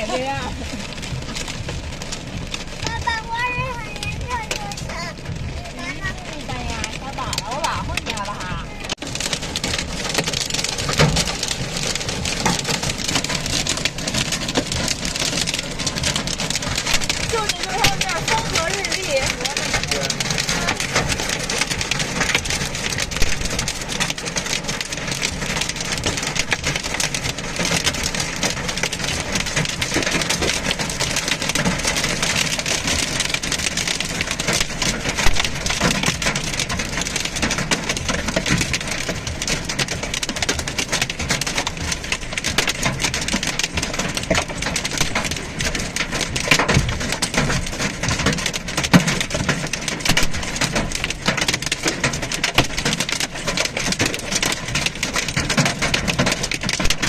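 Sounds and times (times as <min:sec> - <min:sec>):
heavy rain on a car: 0:00.0 - 0:57.0.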